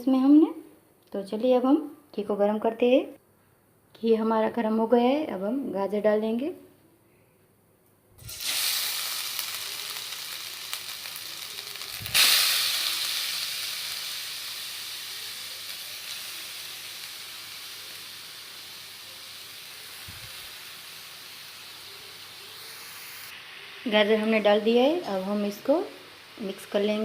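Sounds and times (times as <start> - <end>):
carrots sizzling in hot fat: 8.2 - 27.0.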